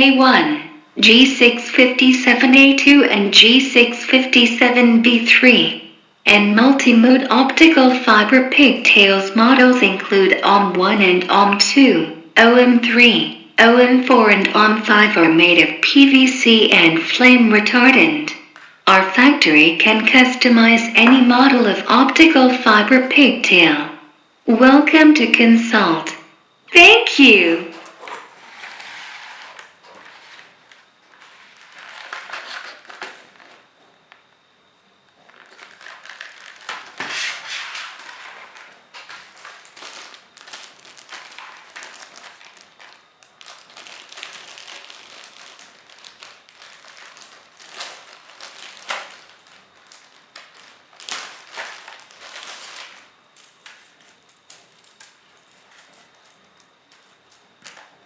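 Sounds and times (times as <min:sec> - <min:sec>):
objects rustling and clicking: 0:27.5 - 0:33.6, 0:35.2 - 0:58.0.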